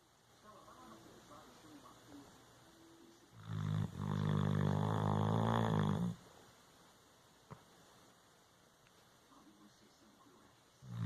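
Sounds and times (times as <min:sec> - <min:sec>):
long pitched snore: 0:03.4 - 0:06.2.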